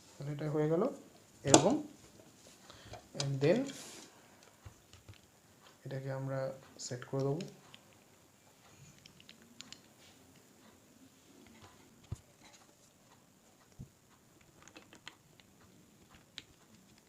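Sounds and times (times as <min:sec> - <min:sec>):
small parts clicking and tapping: 0:04.4 - 0:05.8, 0:06.8 - 0:10.5, 0:11.4 - 0:17.0.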